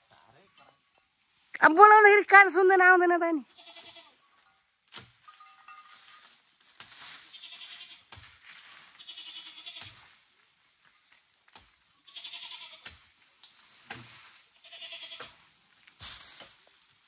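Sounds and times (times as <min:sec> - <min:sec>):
goats bleating: 0:03.4 - 0:04.3, 0:07.2 - 0:08.1, 0:08.9 - 0:10.0, 0:12.0 - 0:12.9, 0:14.6 - 0:15.4.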